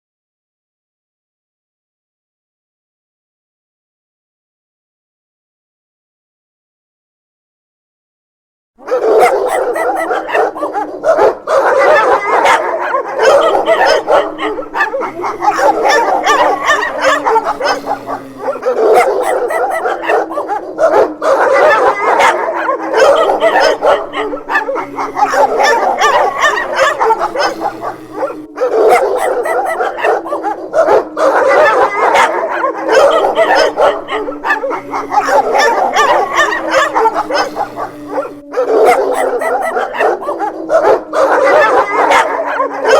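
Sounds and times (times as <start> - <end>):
dogs barking and yipping: 8.8 - 42.9
dogs howling: 8.8 - 42.9.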